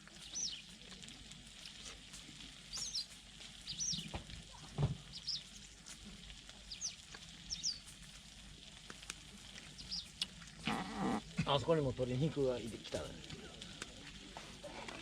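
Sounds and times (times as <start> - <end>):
bird chirping: 3.7 - 4.1.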